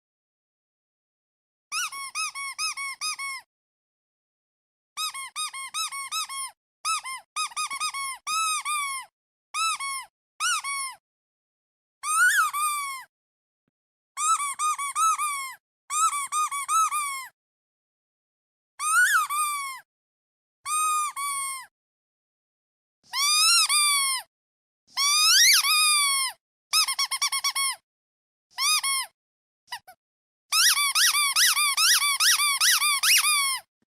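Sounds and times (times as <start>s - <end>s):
rubber duck toy squeaking: 1.7s - 3.5s, 5.0s - 11.0s, 12.0s - 13.1s, 14.2s - 17.3s, 18.8s - 19.8s, 20.7s - 21.7s, 23.1s - 24.3s, 24.9s - 27.8s, 28.5s - 33.7s.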